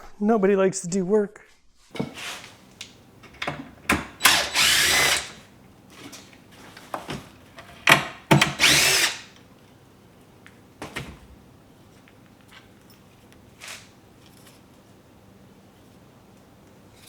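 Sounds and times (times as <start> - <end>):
handling knocks and clatter: 1.9 - 4.4, 5.9 - 8.6
cordless power drill running: 3.4 - 5.5, 7.8 - 9.4.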